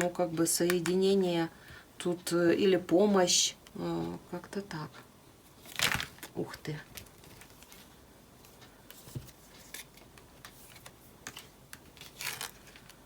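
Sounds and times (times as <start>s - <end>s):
cards rustling: 5.6s - 13.0s.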